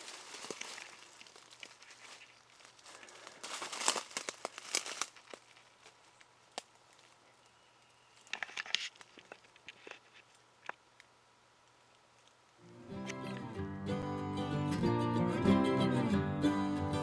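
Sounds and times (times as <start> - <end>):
loud crunching bursts: 0.0 - 6.0
dry leaves and brush rustling: 0.0 - 11.0.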